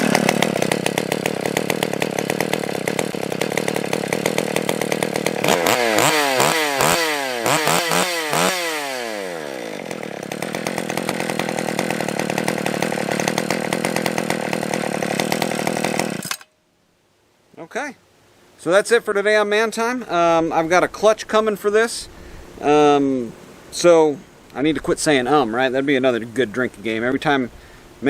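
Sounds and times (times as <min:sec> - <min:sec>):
chainsaw idling and revving: 0:00.0 - 0:16.5.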